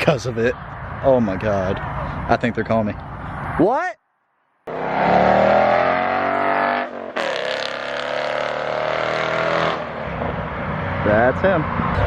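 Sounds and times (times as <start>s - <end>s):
car engine pull-by: 4.7s - 12.0s.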